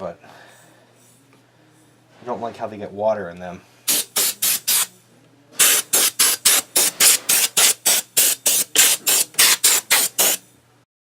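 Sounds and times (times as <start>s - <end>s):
compressed air blasts: 3.9s - 4.9s, 5.6s - 10.5s.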